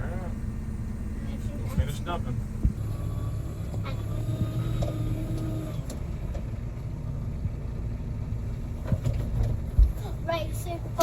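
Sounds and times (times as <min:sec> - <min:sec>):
diesel engine running: 0:00.0 - 0:11.0
hydraulic whine: 0:02.3 - 0:06.3.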